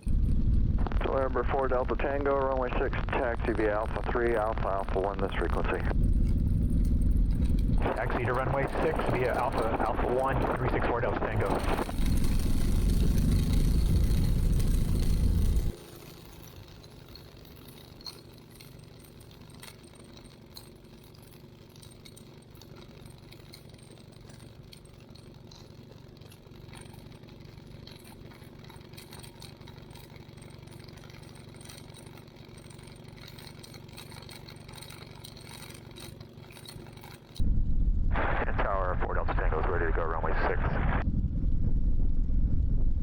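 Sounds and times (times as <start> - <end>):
airplane engine idling: 0.0 - 15.8, 37.4 - 41.1
small rattles and clicks: 0.0 - 37.4.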